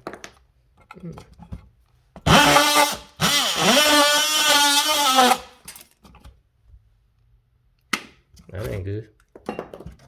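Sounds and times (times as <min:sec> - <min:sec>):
oscillating multi-tool whining: 0:02.3 - 0:05.6.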